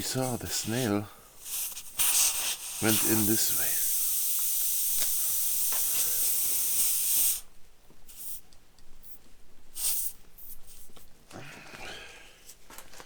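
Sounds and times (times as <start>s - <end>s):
air hissing from tire puncture: 0.0s - 7.5s, 8.1s - 8.4s, 9.8s - 10.9s.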